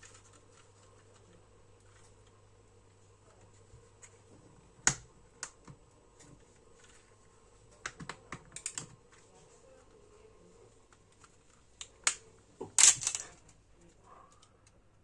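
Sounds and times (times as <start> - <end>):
clicks of small parts being handled: 8.4 - 9.0, 11.2 - 13.6.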